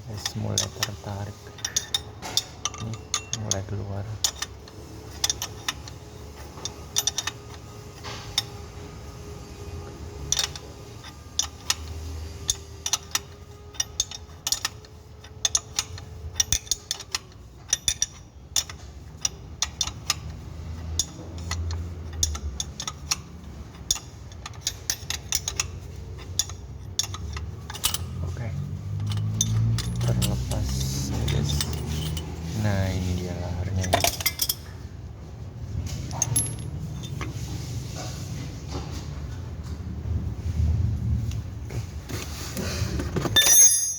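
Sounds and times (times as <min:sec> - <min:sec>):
metallic clicks of hand tools: 0:10.3 - 0:28.2.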